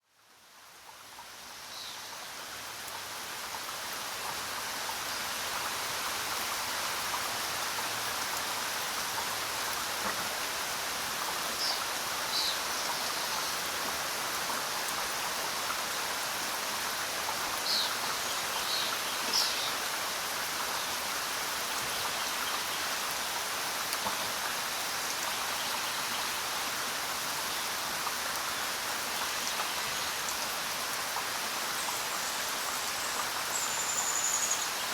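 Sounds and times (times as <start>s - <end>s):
steady rain: 0.0s - 34.9s.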